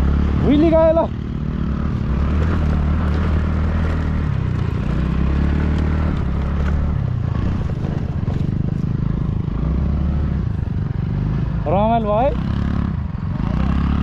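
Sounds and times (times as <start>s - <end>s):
vehicle engine running: 0.0s - 14.0s
rattles and clatter: 5.6s - 9.1s.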